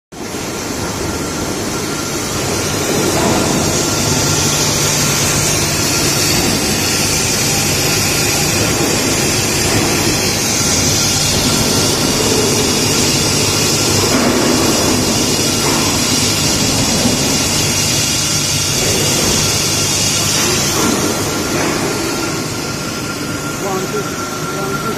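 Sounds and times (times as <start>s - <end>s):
low machine hum: 0.2s - 24.9s
machine hiss: 0.3s - 24.9s
thin high tone: 22.0s - 24.9s.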